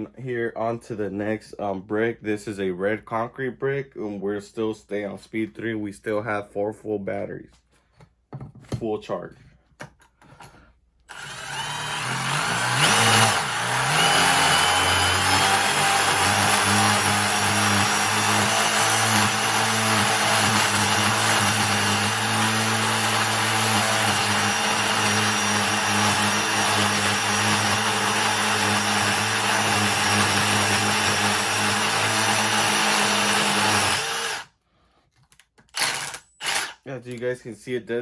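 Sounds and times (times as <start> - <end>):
impact driver drilling into brick: 11.1 - 34.5, 35.6 - 36.9.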